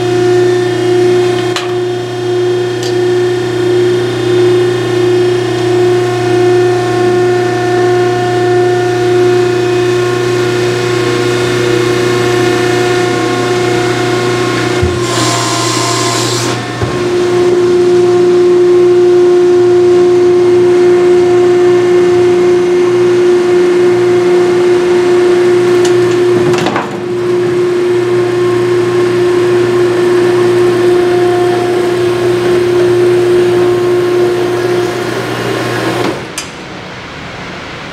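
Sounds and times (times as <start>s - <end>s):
hydraulic pump humming and whining: 0.0s - 37.9s
hydraulic hiss: 14.9s - 16.7s.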